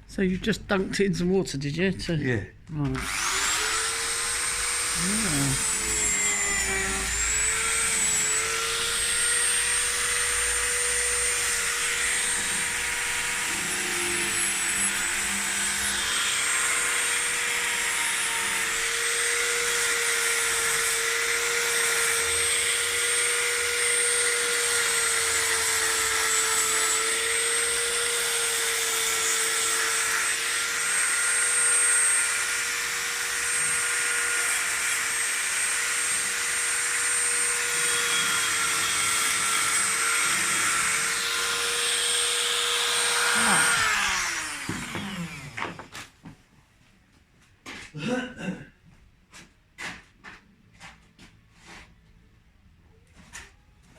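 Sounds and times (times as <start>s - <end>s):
electric polishing tool whining: 3.0s - 45.8s.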